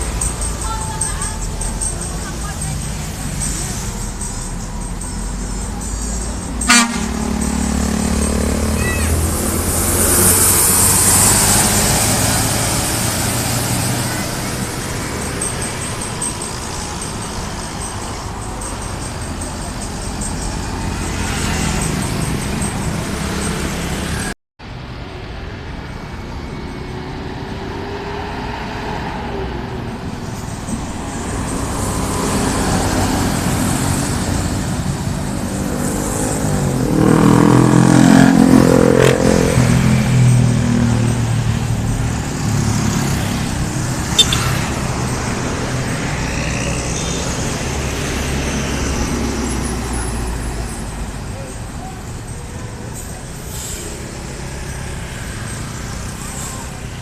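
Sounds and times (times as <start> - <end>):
street traffic passing: 0.0 - 57.0.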